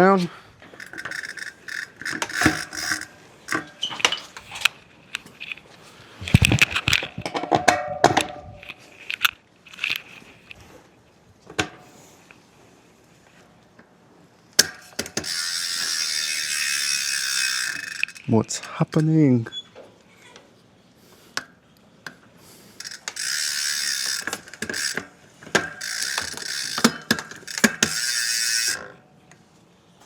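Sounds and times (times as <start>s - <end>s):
metallic clicks and clinks: 0.8s - 5.6s, 14.6s - 19.1s.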